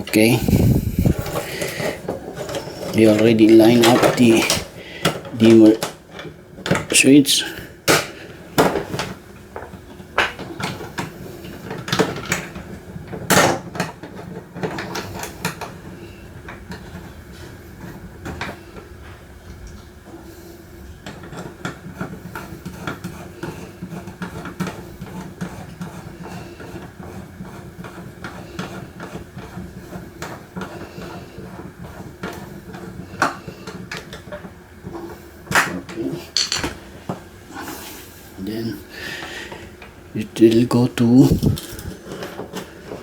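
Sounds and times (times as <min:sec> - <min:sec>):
steady low hum: 0:00.0 - 0:05.9, 0:36.2 - 0:42.1.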